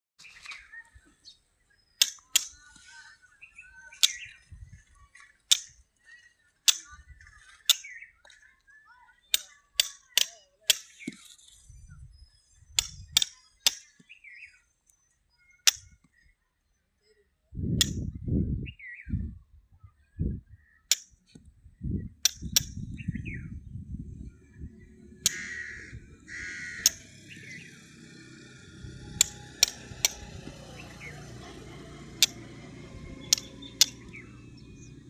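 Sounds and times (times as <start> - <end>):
sharp clicks or knocks: 2.0 - 2.6, 5.5 - 5.8, 22.2 - 22.8, 25.2 - 25.6, 26.8 - 27.1, 29.2 - 30.6, 32.2 - 32.6, 33.2 - 34.3.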